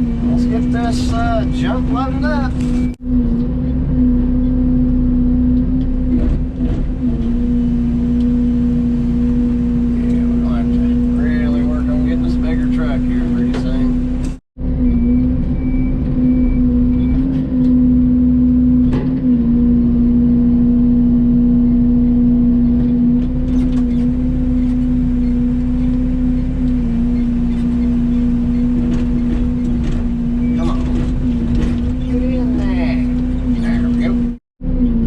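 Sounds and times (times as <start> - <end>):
excavator diesel engine running: 21.8 - 35.0.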